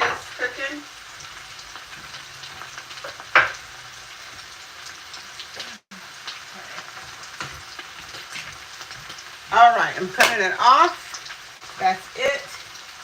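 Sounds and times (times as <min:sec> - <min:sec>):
potatoes and onions sizzling in pan: 0:00.0 - 0:13.0.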